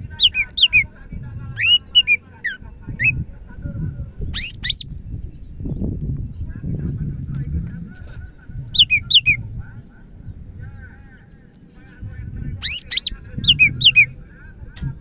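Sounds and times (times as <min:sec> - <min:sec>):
low background rumble: 0:00.0 - 0:15.0
bird whistling notes: 0:00.1 - 0:00.9, 0:01.6 - 0:03.2, 0:04.4 - 0:04.9, 0:08.8 - 0:09.4, 0:12.6 - 0:14.1.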